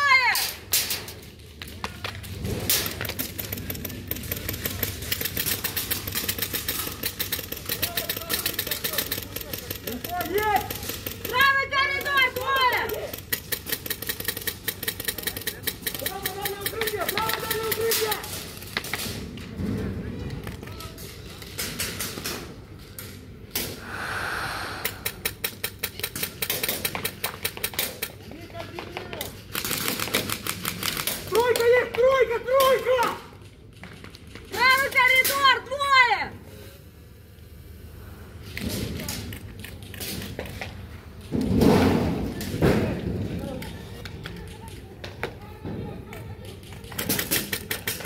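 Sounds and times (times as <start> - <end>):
short hiss: 23.7 - 25.3.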